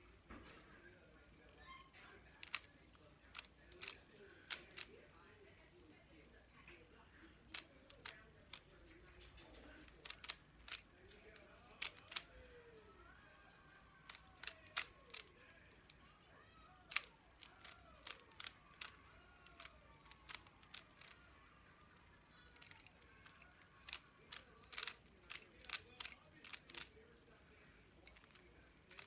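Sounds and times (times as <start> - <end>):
puzzle cube clicking: 2.3 - 4.9, 7.5 - 12.5, 14.0 - 16.0, 16.8 - 21.2, 22.4 - 27.0, 28.0 - 29.0.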